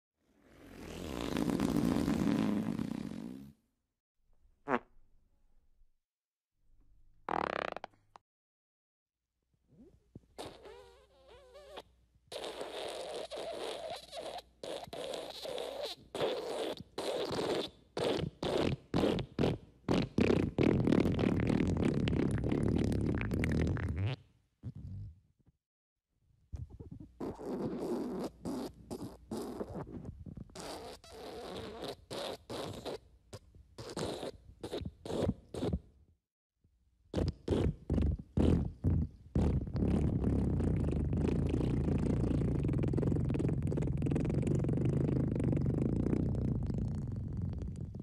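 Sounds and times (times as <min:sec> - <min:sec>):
raspy fart sounds: 0:00.4 - 0:03.6, 0:04.6 - 0:04.9, 0:07.3 - 0:08.2, 0:09.7 - 0:25.2, 0:26.6 - 0:35.9, 0:37.1 - 0:48.0.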